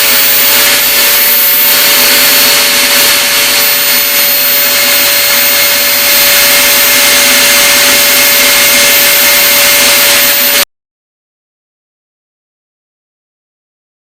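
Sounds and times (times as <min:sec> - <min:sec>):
electric drill sander whining: 0:00.0 - 0:10.7.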